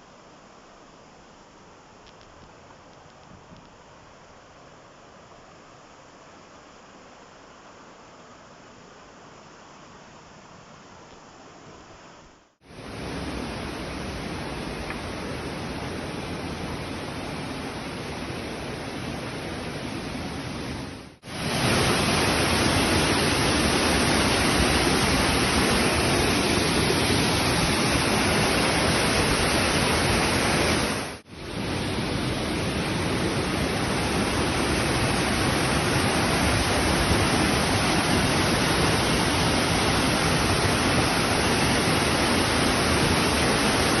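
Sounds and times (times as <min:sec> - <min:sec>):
waterfall rushing: 0:12.7 - 0:44.0.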